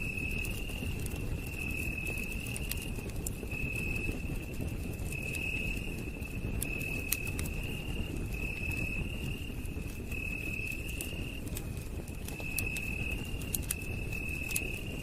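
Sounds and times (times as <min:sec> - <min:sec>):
campfire crackling: 0:00.0 - 0:15.0.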